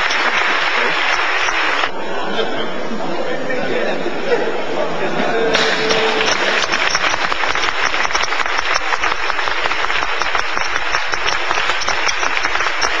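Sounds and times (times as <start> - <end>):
audience applauding: 0.0 - 1.9, 5.5 - 13.0.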